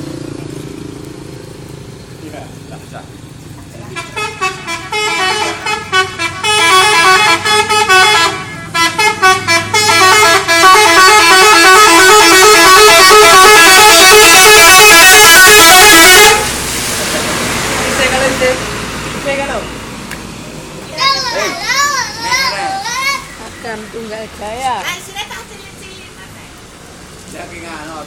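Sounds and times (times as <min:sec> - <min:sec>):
bus musical horn tune: 0:04.0 - 0:16.6.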